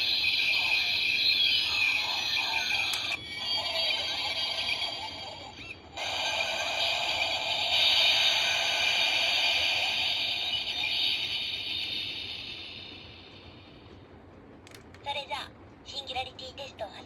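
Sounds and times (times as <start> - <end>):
electronic toy sound effect: 0.0 - 13.0.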